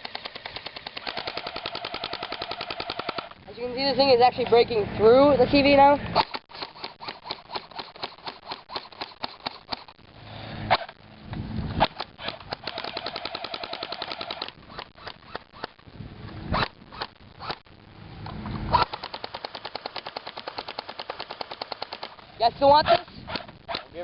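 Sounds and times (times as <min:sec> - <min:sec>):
airsoft gun full-auto bursts: 0:00.0 - 0:03.4, 0:06.2 - 0:10.0, 0:11.8 - 0:15.8, 0:18.7 - 0:22.2.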